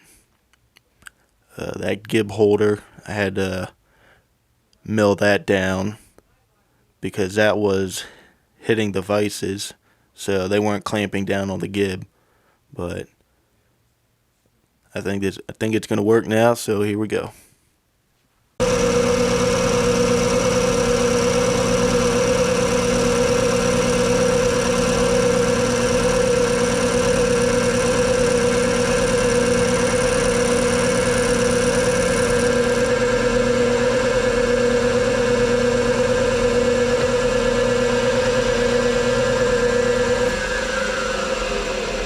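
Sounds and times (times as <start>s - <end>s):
milling machine whine: 18.6s - 42.0s.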